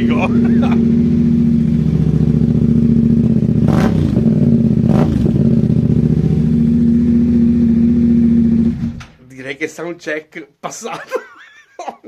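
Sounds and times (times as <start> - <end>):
motorcycle engine idling: 0.0 - 9.0
engine throttle blips: 0.0 - 9.2.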